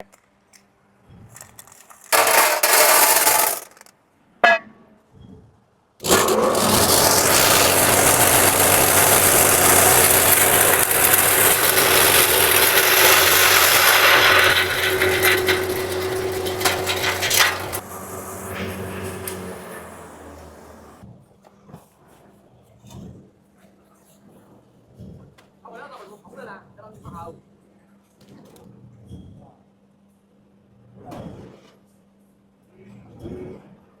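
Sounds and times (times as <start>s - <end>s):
grinder machine grinding hiss: 6.0s - 21.0s.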